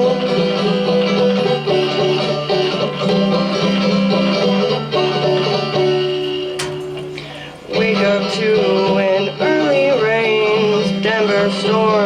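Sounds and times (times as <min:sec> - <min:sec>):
plucked string instruments: 0:00.0 - 0:11.2
person singing: 0:07.2 - 0:12.0.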